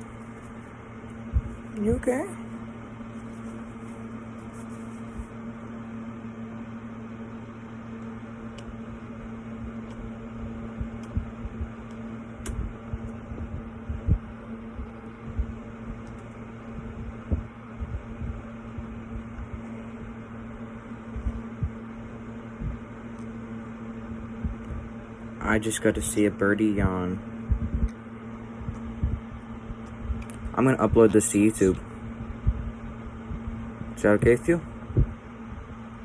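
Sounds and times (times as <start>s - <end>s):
electrical fan hum: 0.0s - 36.0s
soft low bumps: 28.6s - 30.2s.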